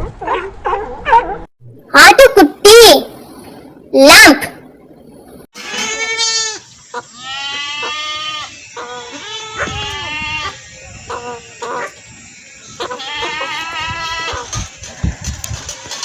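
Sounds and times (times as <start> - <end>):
lamb bleating: 5.6 - 11.8, 12.8 - 14.5.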